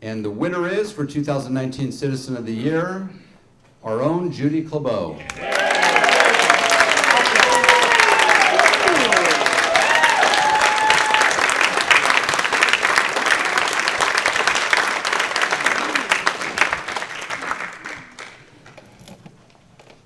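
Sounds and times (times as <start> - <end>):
audience applauding: 5.2 - 18.8.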